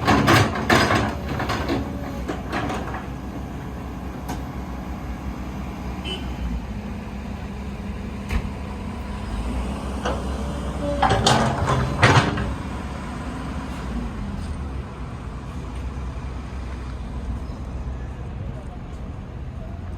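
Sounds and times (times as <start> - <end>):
diesel engine idling: 1.1 - 10.9.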